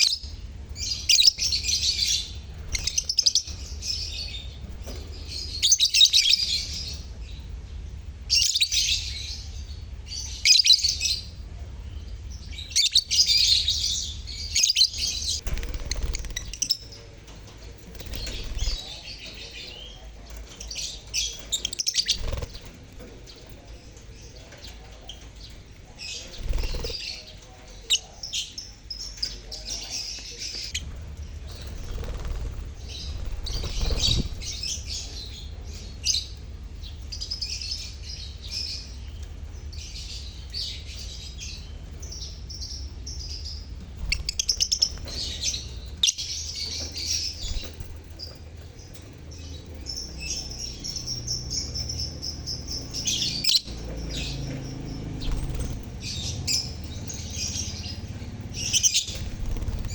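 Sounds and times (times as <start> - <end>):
parrots chattering: 12.4 - 17.2, 17.8 - 36.4, 44.0 - 59.9
low rumble: 30.7 - 40.9, 50.8 - 59.9.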